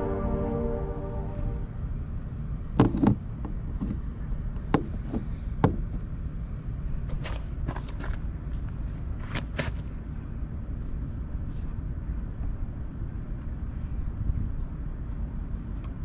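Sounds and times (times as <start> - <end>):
steady low rumble: 0.0 - 7.6.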